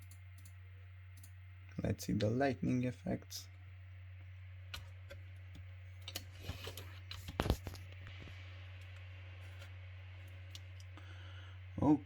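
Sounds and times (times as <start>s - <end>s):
computer clicks: 0.0s - 1.4s
steady low hum: 0.0s - 12.0s.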